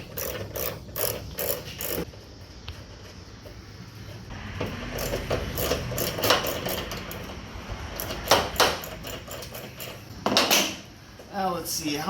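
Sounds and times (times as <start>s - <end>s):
socket ratchet clicking: 0.0s - 2.1s, 5.0s - 7.4s, 8.0s - 10.1s.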